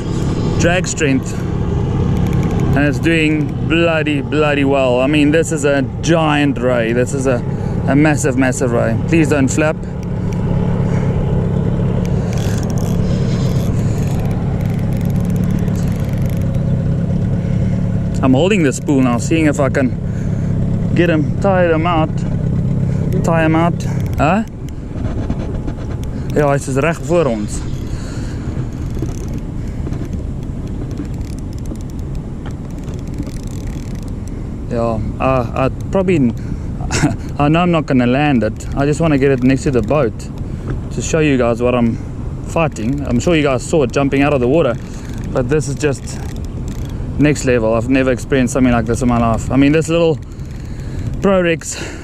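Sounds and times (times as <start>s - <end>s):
boat motor humming: 0.0s - 52.0s
faint ticks: 2.1s - 2.8s, 12.0s - 16.7s, 27.7s - 34.4s, 44.6s - 47.5s, 48.5s - 51.4s.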